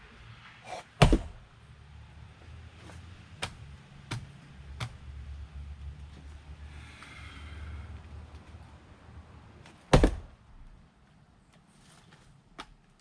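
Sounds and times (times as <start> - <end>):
axe splitting firewood: 0.7 - 1.5, 9.9 - 10.8.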